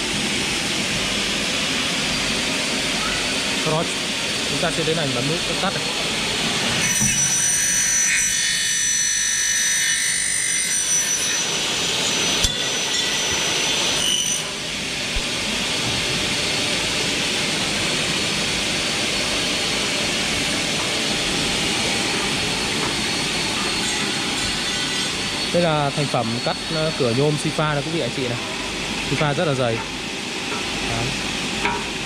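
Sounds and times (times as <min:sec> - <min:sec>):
saw motors running: 0:00.2 - 0:29.8
saw blades screeching on metal: 0:06.8 - 0:14.7, 0:22.0 - 0:28.4.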